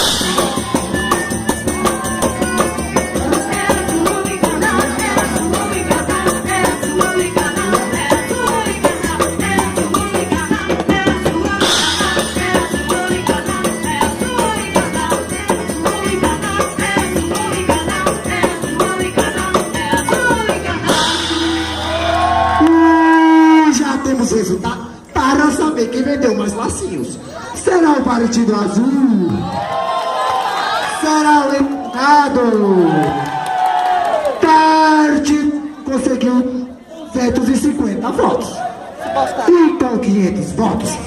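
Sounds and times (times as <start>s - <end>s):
shaker and tambourine beat: 0.0s - 22.6s
lively dance music: 0.0s - 25.0s.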